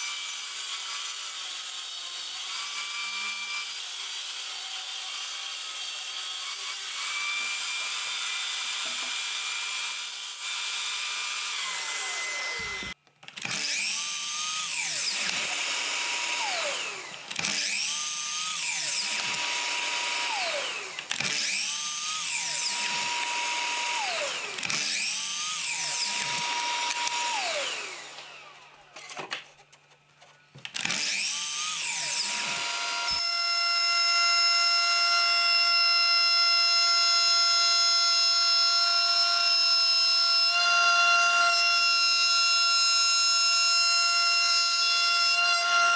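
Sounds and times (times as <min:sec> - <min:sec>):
power tool running: 0:06.2 - 0:29.3, 0:30.7 - 0:45.9
electric drill whining: 0:06.9 - 0:29.2, 0:30.7 - 0:45.9.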